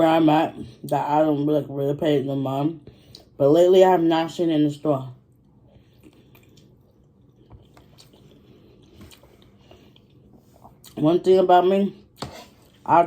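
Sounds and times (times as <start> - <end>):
chewing food: 5.3 - 11.0.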